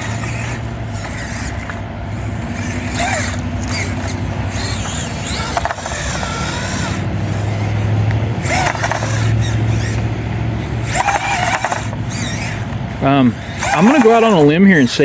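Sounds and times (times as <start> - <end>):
small electric motor whirring: 0.0 - 15.0.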